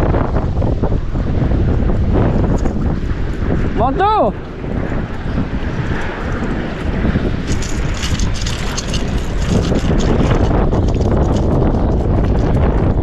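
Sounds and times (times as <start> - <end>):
wind buffeting microphone: 0.0 - 13.0
fast small clicks: 4.8 - 13.0.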